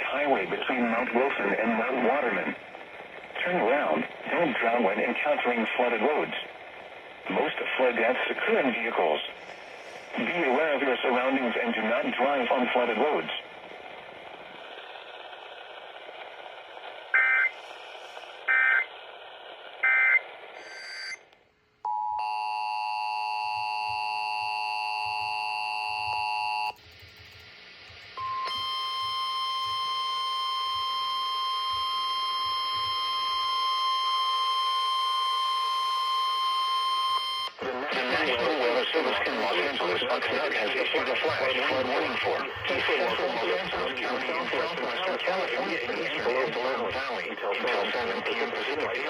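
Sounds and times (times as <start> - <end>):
radio hiss: 0.0 - 20.8, 37.5 - 49.0
short data bursts: 17.1 - 21.2.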